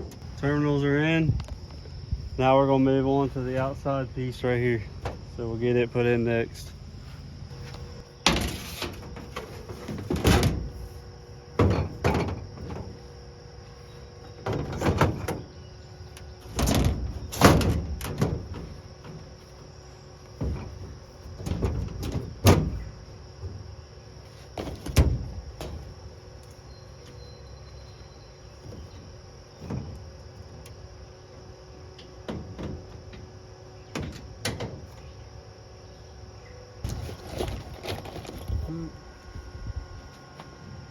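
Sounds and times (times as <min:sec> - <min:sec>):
metal parts knocking and rattling: 0:11.6 - 0:13.0, 0:16.4 - 0:19.2, 0:20.4 - 0:23.6.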